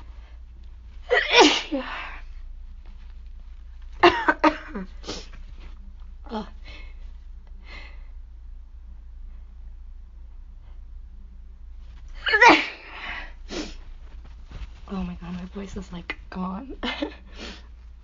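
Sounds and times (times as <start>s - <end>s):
woman sneezing: 1.1s - 2.0s.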